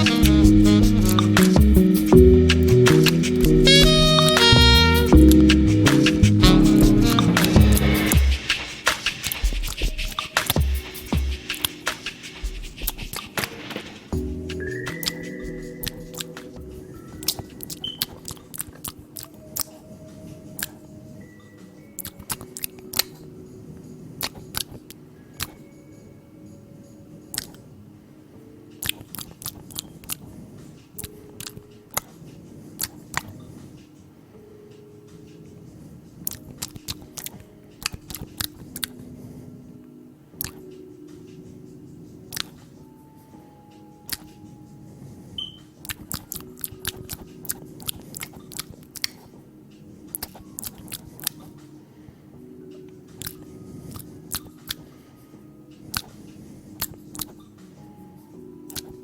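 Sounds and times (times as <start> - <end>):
low steady drone: 0.0 - 8.6, 14.2 - 17.8.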